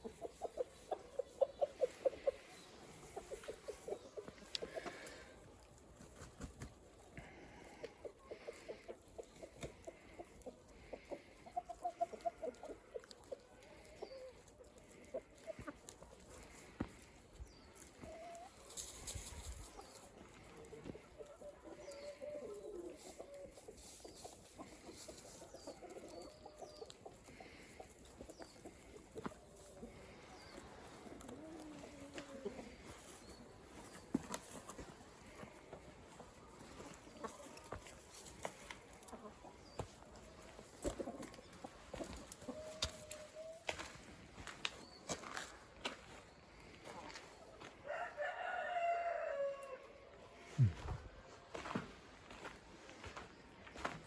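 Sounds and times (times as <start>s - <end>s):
chickens clucking: 0.0s - 54.0s.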